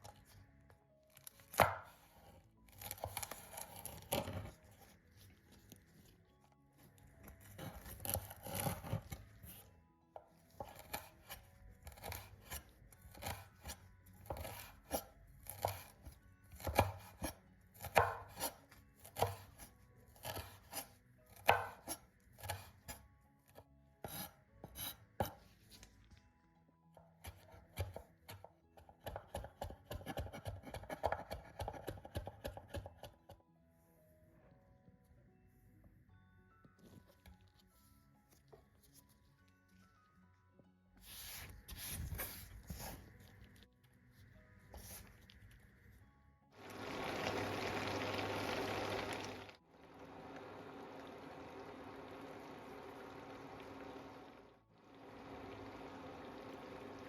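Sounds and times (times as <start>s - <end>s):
knife chopping on cutting board: 1.5s - 2.0s, 7.6s - 9.6s, 10.6s - 23.0s, 27.2s - 33.2s.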